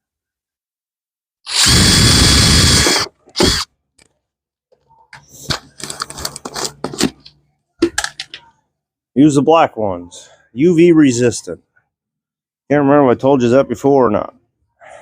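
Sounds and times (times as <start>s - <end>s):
power drill running: 1.5s - 3.7s.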